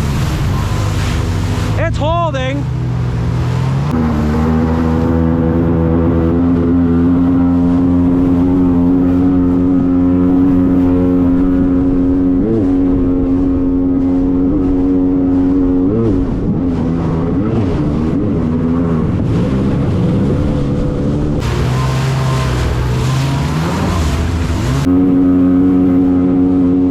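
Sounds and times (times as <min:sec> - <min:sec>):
jet ski engine running: 0:00.0 - 0:26.9.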